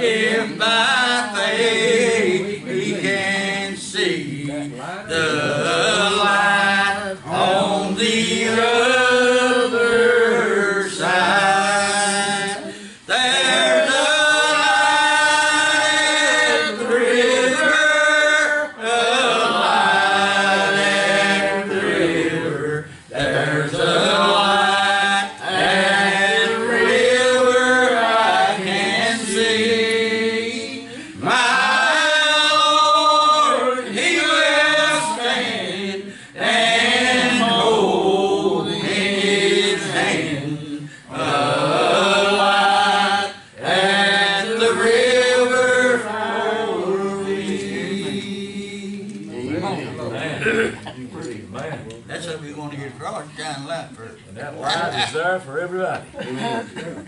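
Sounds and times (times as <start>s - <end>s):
slow gospel hymn singing: 0.0s - 51.0s.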